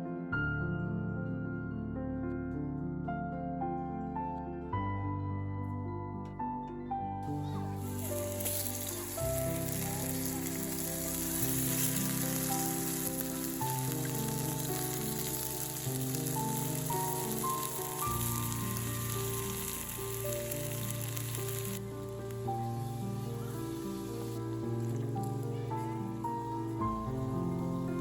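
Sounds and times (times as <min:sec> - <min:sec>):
background music: 0:00.0 - 0:28.0
fish sizzling in a pan: 0:07.2 - 0:28.0.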